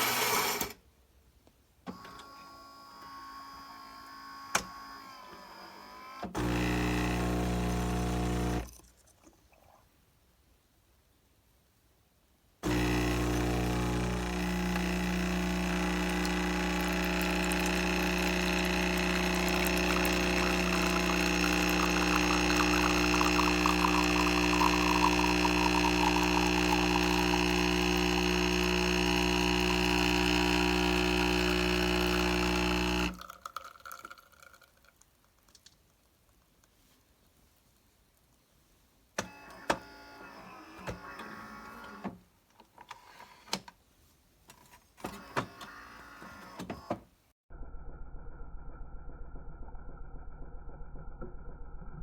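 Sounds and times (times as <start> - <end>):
espresso machine pump humming: 6.4 - 8.7, 12.6 - 33.4
liquid pouring: 12.9 - 30.0, 32.0 - 35.7.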